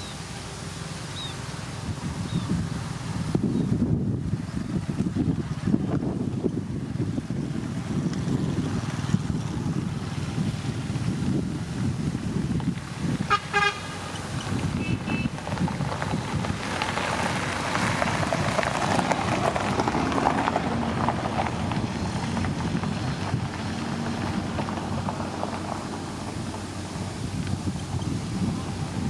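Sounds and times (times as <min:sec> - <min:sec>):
diesel engine running: 0:00.0 - 0:29.0
rushing noise: 0:00.0 - 0:29.0
vehicle horn toots: 0:13.2 - 0:15.4.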